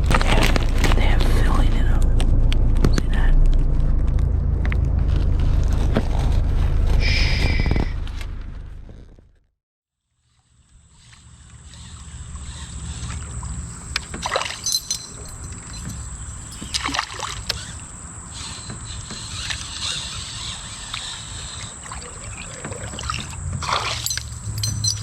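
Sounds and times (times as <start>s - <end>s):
boat engine low rumble: 0.0s - 9.4s, 10.3s - 25.0s.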